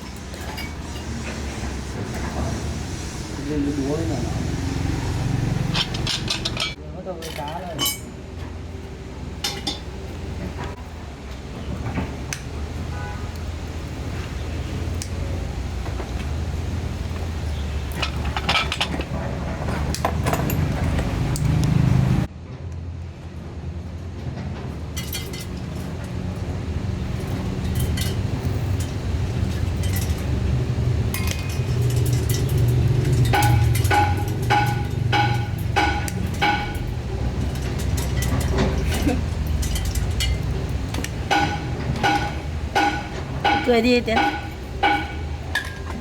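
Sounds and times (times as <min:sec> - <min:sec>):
hammer striking metal: 0:31.1 - 0:46.0.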